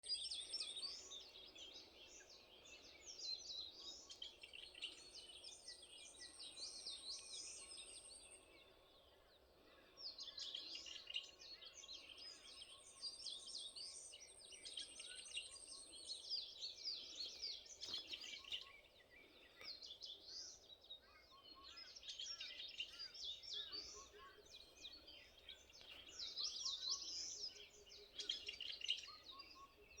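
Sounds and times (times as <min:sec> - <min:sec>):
small birds chirping: 0:00.0 - 0:30.0.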